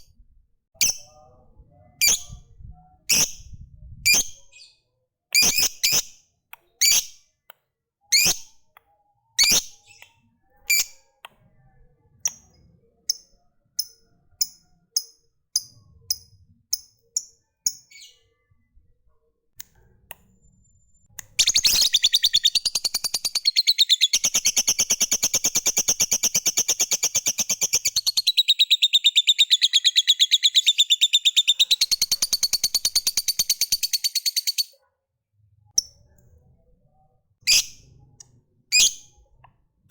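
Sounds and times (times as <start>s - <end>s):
bird sharp chirps: 21.3s - 34.8s, 37.5s - 38.0s
rapid chattering bird trill: 21.4s - 34.7s.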